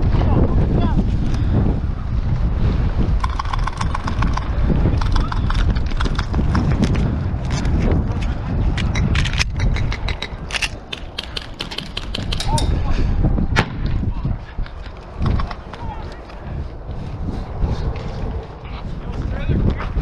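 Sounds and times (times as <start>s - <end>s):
wind rumble: 0.0s - 20.0s
regular clicks: 3.2s - 6.8s, 8.8s - 12.6s
camera handling noise: 3.2s - 12.5s
airsoft guns firing: 10.5s - 12.6s.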